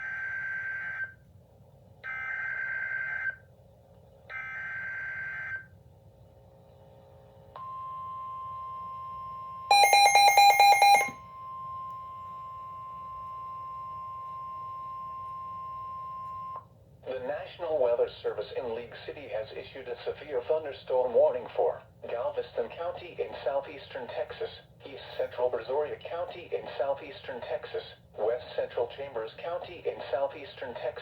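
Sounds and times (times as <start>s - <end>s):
rapid beeping: 9.7s - 11.2s
steady warning tone: 9.7s - 11.2s.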